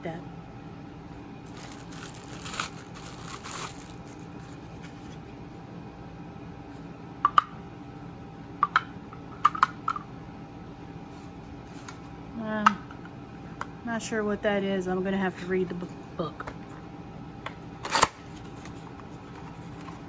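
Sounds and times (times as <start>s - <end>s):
packaging rustling: 1.5s - 4.3s.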